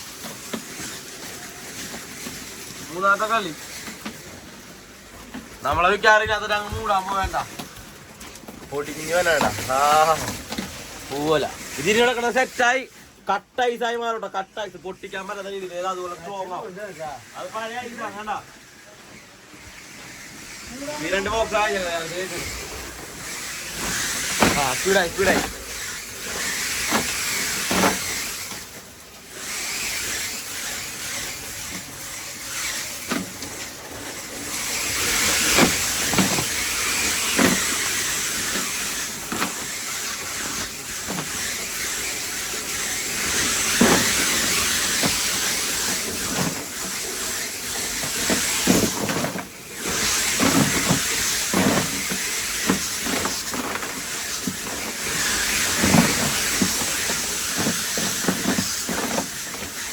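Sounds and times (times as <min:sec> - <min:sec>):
crushed ice rushing hiss: 0:00.0 - 0:59.9
ice knocking: 0:05.3 - 0:07.9, 0:21.1 - 0:28.6.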